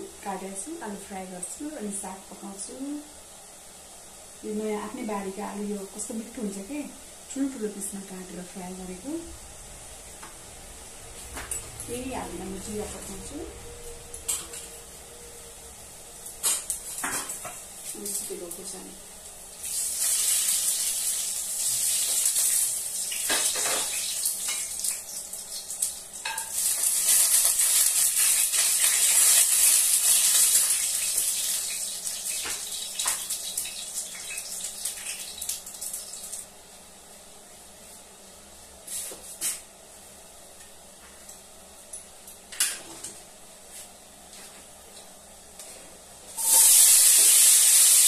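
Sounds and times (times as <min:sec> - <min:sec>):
spices sizzling in hot oil: 0:00.0 - 0:10.6, 0:15.8 - 0:36.6, 0:46.3 - 0:48.0.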